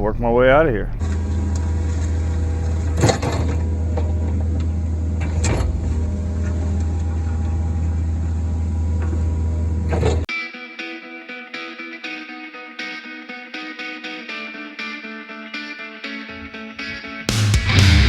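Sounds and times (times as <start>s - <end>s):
excavator diesel engine running: 0.0s - 10.2s
machine clunks: 1.0s - 10.3s.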